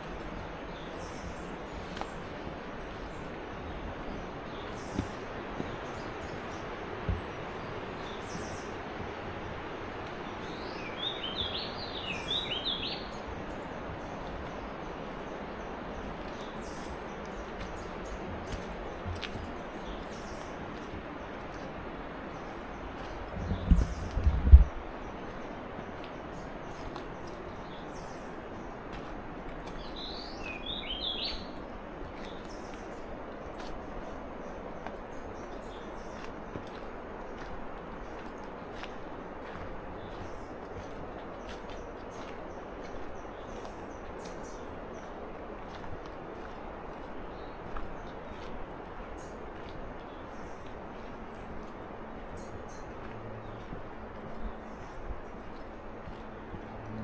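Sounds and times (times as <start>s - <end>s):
river rushing: 0.0s - 57.0s
bird chirping: 10.4s - 20.6s, 29.8s - 31.6s.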